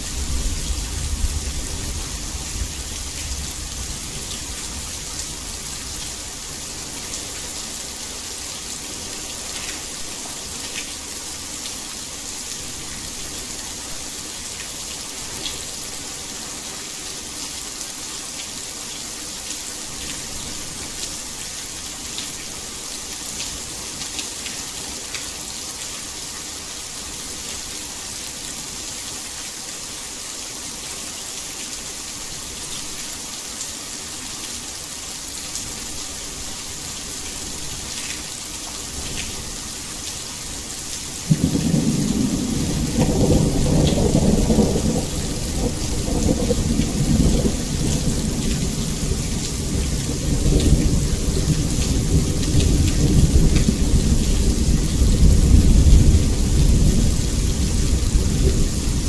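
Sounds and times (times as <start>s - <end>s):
heavy rain hissing: 33.2s - 59.0s
rolling thunder rumble: 41.2s - 59.0s.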